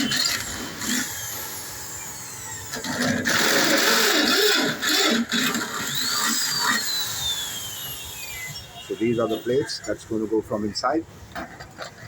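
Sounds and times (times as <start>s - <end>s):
electric power tool whirring: 0.0s - 8.9s.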